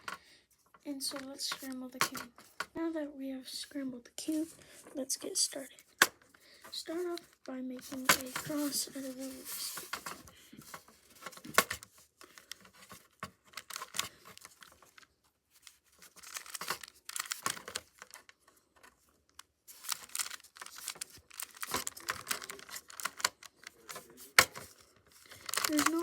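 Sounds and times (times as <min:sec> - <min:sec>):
puzzle cube clicking and scraping: 0:06.7 - 0:18.4, 0:19.7 - 0:26.0.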